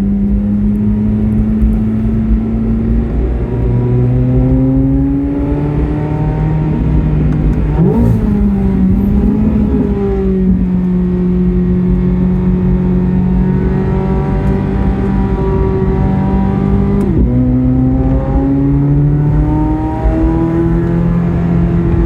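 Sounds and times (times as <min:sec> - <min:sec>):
sports car engine revving: 0:00.0 - 0:22.0.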